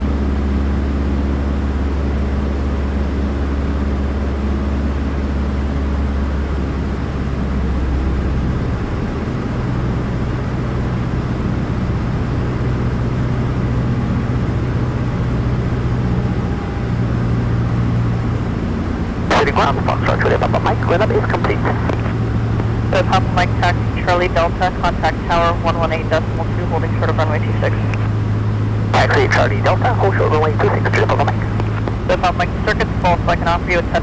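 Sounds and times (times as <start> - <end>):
airplane engine running: 14.4 - 34.0.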